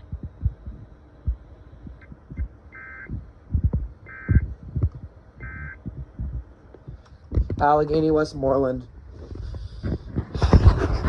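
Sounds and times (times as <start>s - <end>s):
radio static thumps and crackle: 0.0s - 7.9s, 9.1s - 11.0s
warbling two-pitch data tones: 5.4s - 5.9s.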